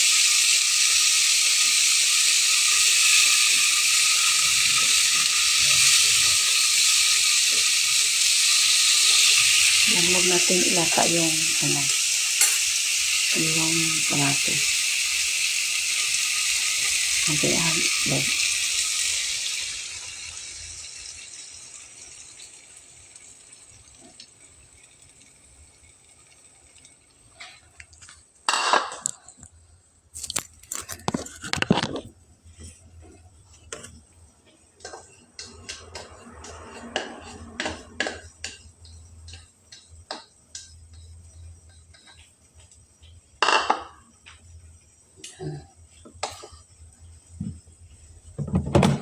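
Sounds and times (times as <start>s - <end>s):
frying sizzle: 0.0s - 49.0s
cookware and utensils clattering: 9.8s - 14.6s, 30.2s - 32.1s.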